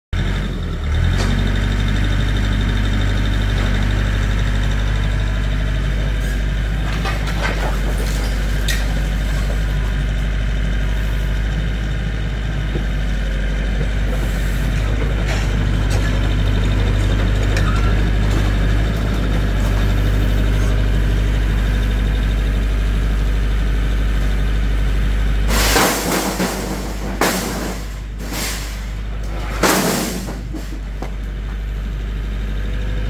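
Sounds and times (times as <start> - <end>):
engine idling: 0.2 - 33.0
knocks and clatters: 6.8 - 9.6, 25.5 - 31.3.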